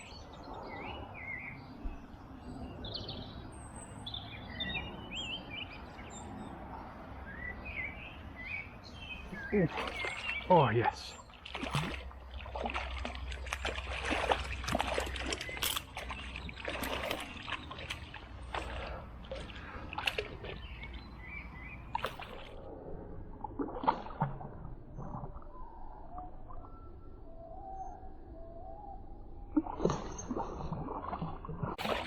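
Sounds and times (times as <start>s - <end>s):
water splashing from a fish: 9.4s - 21.0s, 21.8s - 26.8s, 29.5s - 32.0s.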